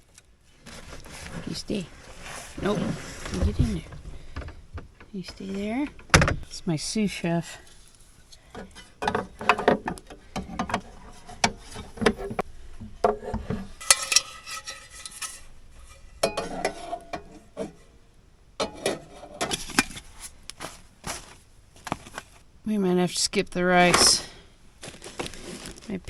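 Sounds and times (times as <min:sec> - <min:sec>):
metal cookware clinking and scraping: 0:13.0 - 0:17.9, 0:18.6 - 0:20.0.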